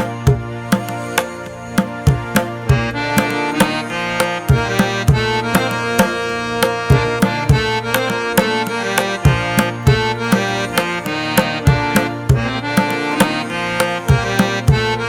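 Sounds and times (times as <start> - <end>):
hand drum beat: 0.0 - 15.0
sustained melodic notes: 0.0 - 15.0.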